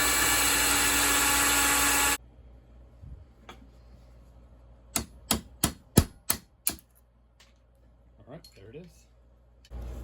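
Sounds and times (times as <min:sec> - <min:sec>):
electric drill running: 0:00.0 - 0:02.2
hammer striking a metal punch: 0:04.9 - 0:06.8.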